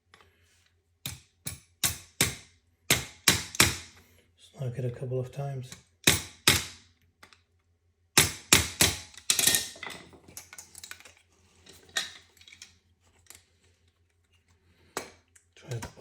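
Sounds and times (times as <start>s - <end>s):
small clicks of tool handling: 7.2s - 7.5s, 9.1s - 16.0s.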